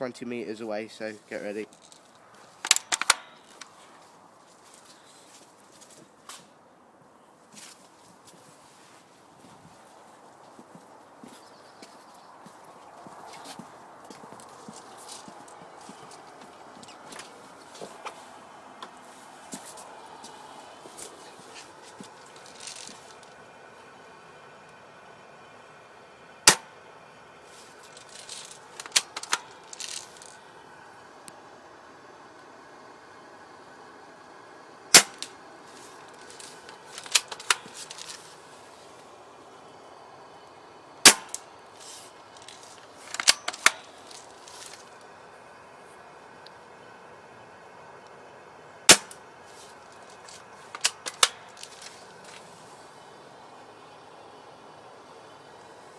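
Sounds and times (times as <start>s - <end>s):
quick clicks: 1.6s - 3.8s, 27.8s - 30.4s, 35.0s - 38.3s, 41.1s - 45.0s, 48.9s - 52.4s
airsoft rifle cracks: 2.6s - 3.4s, 26.5s - 26.7s, 35.0s - 35.3s, 41.1s - 41.4s, 43.1s - 44.8s, 48.9s - 49.2s, 50.2s - 51.9s
airsoft rifle shot crack: 26.5s - 26.7s, 35.0s - 35.3s, 41.1s - 41.4s, 48.9s - 49.2s.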